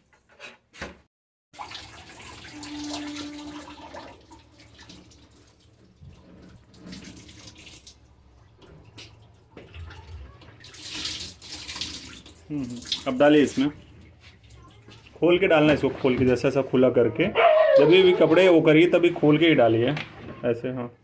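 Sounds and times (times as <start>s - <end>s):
water running and splashing: 1.5s - 16.2s.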